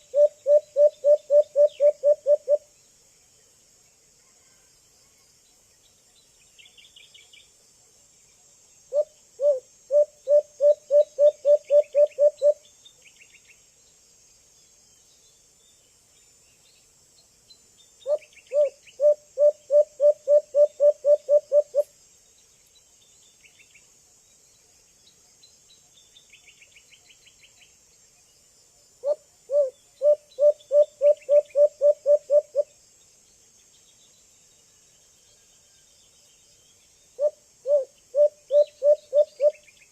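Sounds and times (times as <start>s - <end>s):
dove hooting: 0.0s - 2.6s, 8.9s - 12.6s, 18.1s - 21.9s, 29.0s - 32.7s, 37.2s - 39.6s
faint bird chirps: 0.0s - 7.6s, 14.7s - 39.9s
insect drone: 0.0s - 39.9s.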